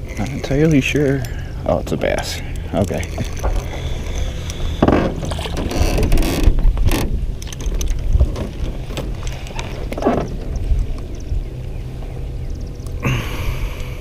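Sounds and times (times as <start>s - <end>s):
fishing reel clicking and rattling: 0.0s - 1.4s
wind rumble on microphone: 0.0s - 14.0s.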